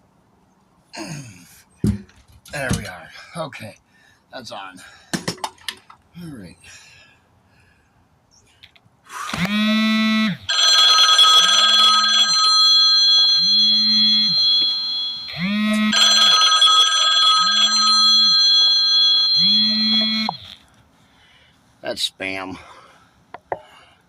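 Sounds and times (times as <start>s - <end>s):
phone ringtone: 10.5s - 20.6s.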